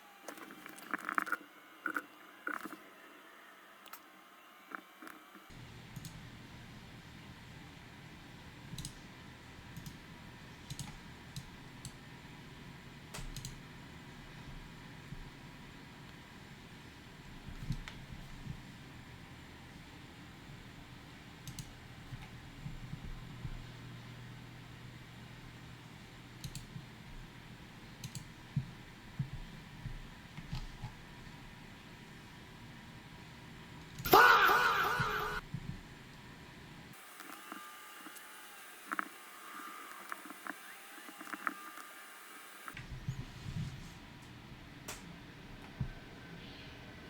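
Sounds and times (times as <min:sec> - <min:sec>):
low room hum: 0:00.0 - 0:47.0
computer mouse clicks: 0:03.8 - 0:04.1, 0:04.7 - 0:06.2, 0:08.7 - 0:09.0, 0:09.8 - 0:10.0, 0:10.6 - 0:12.0, 0:13.2 - 0:13.6, 0:21.4 - 0:23.0, 0:26.4 - 0:26.8, 0:28.0 - 0:31.0, 0:37.0 - 0:42.8.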